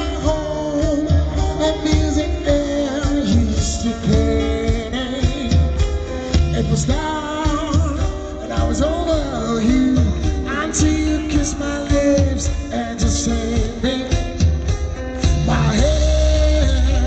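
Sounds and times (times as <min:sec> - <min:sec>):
loud music with singing: 0:00.0 - 0:17.0.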